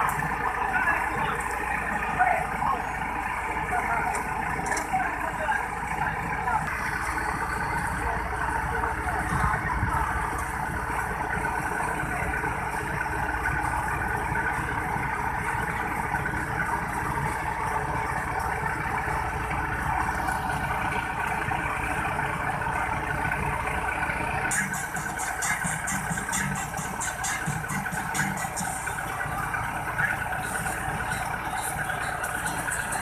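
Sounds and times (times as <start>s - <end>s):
diesel farm machinery running: 0.0s - 33.0s.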